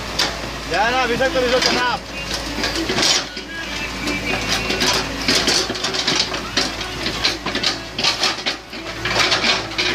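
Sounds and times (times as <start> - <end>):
engine humming: 0.0 - 9.9
sharp clicks or rattles: 4.6 - 9.9.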